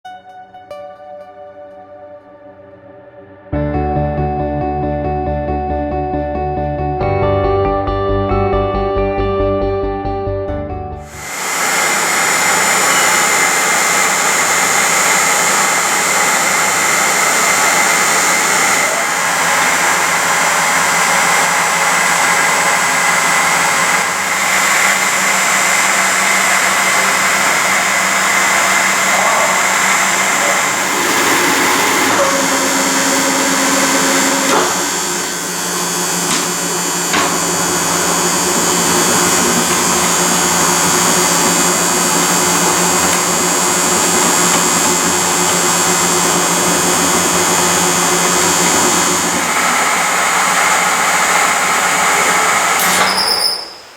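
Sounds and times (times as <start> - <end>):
lathe motor whine and hum: 11.1 - 53.0.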